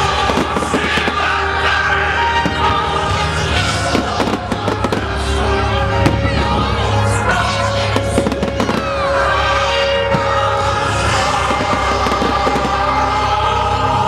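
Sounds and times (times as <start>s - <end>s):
fireworks bursting and crackling: 0.0s - 1.6s, 2.3s - 5.4s, 7.8s - 9.4s, 11.1s - 13.3s
fireworks whistling: 0.0s - 1.6s, 7.9s - 10.5s, 11.1s - 13.2s
loud music playing: 0.0s - 14.0s.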